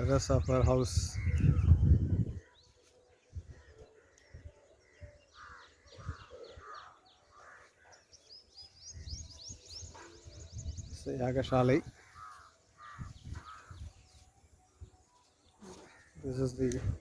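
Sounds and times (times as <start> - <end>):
small birds chirping: 0.0 - 17.0
crows cawing: 3.6 - 8.3, 11.9 - 14.1, 15.6 - 16.4.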